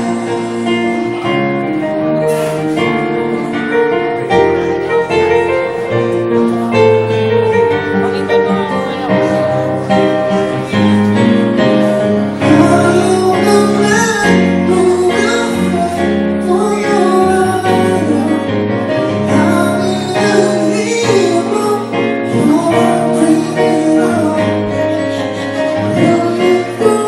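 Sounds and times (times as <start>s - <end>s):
acoustic instrumental accompaniment: 0.0s - 27.0s
person singing: 12.2s - 27.0s.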